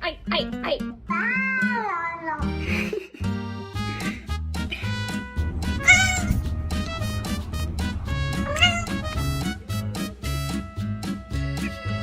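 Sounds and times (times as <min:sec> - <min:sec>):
background music with bouncing bass: 0:03.3 - 0:12.0.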